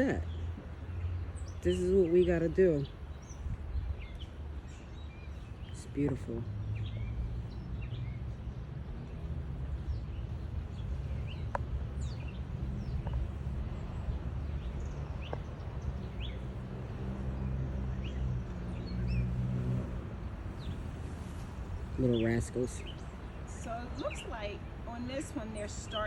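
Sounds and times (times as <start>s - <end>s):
bird chirps: 0.0s - 26.0s.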